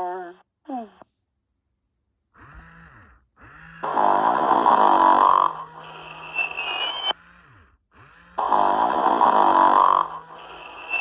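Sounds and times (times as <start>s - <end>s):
toy snoring with whistling breath: 2.4s - 11.0s.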